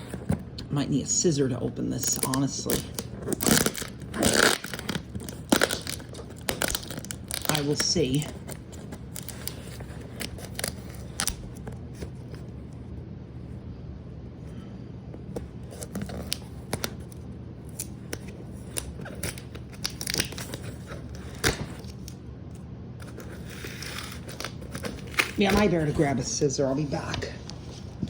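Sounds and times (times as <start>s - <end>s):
hands tearing package wrapping: 2.0s - 12.3s, 15.7s - 22.2s, 23.0s - 25.7s.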